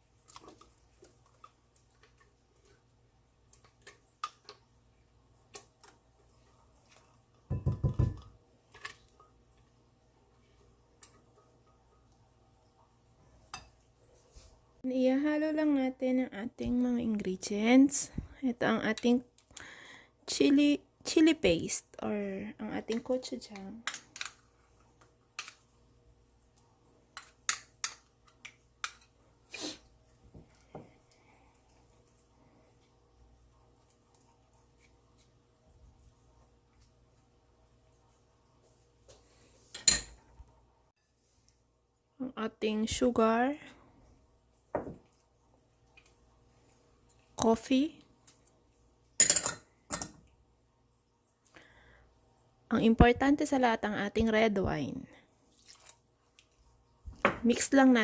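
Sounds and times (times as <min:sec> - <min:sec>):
spoon knocking against bowl: 0:07.5 - 0:08.2.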